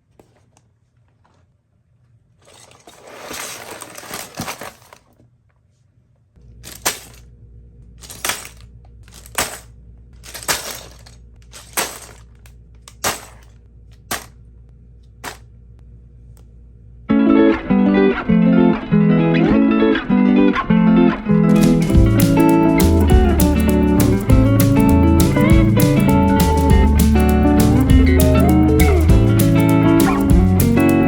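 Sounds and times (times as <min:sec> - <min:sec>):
plastic packaging rustling: 0:02.4 - 0:05.2, 0:06.6 - 0:07.2, 0:08.0 - 0:14.3.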